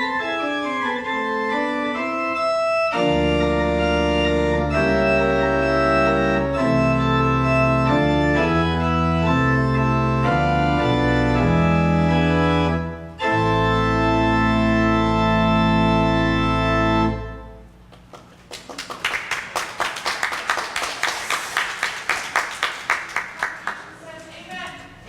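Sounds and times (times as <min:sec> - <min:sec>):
church organ chords: 0:00.0 - 0:17.9.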